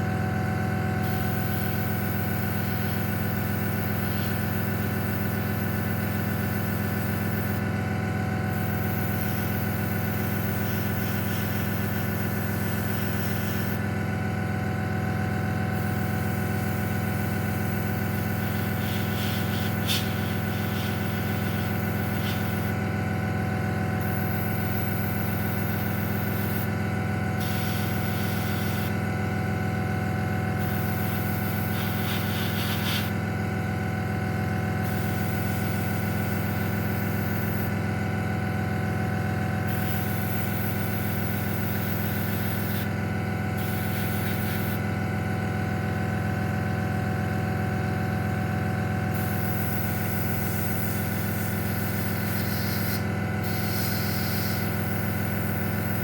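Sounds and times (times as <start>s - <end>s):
compressor humming: 0.0s - 56.0s
airbrush hissing: 1.0s - 7.6s, 8.5s - 13.8s, 15.8s - 22.8s, 24.0s - 26.7s, 27.4s - 29.0s, 30.6s - 33.2s, 34.8s - 37.7s, 39.7s - 42.9s, 43.6s - 44.8s, 49.1s - 56.0s.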